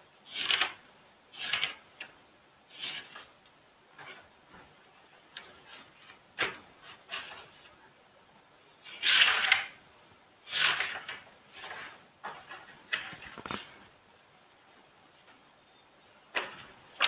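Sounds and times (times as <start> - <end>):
scratchy writing strokes on board: 0.3 - 1.9, 2.7 - 3.3, 5.4 - 7.8, 10.4 - 13.8.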